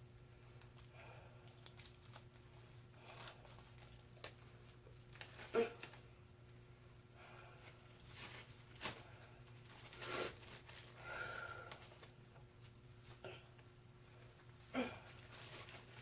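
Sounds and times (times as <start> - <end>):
packaging rustling and tearing: 1.5 - 6.0, 9.6 - 11.0, 15.1 - 16.0.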